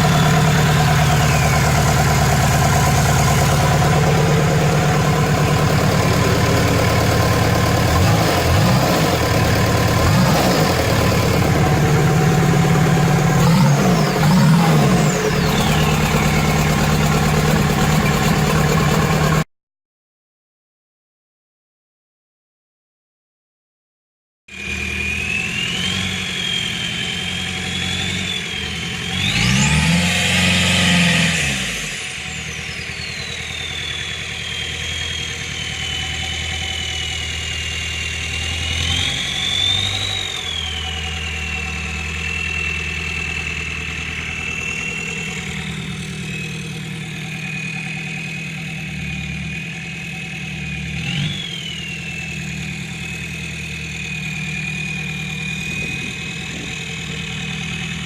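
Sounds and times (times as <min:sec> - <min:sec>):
turbo whistling: 0:00.0 - 0:19.4, 0:24.5 - 0:29.7, 0:32.0 - 0:38.1, 0:38.8 - 0:48.8, 0:50.0 - 0:57.0
diesel engine idling: 0:00.0 - 0:19.5, 0:31.8 - 0:58.0.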